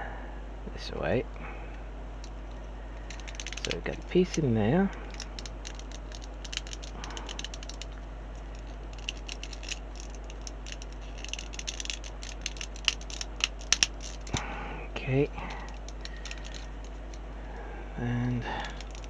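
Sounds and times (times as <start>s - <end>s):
steady low hum: 0.0s - 19.0s
plastic parts clicking: 3.0s - 14.4s, 15.4s - 17.2s, 18.2s - 19.0s.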